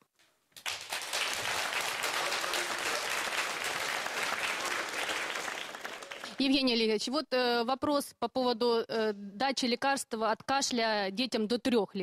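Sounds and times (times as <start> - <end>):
audience applauding: 0.6 - 6.5.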